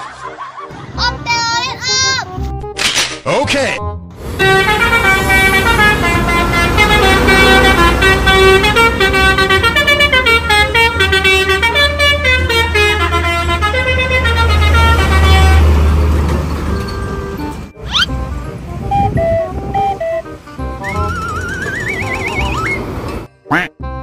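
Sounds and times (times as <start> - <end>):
bus engine rumbling: 4.1 - 23.3
musical air horn tune: 4.3 - 15.9, 17.9 - 22.8.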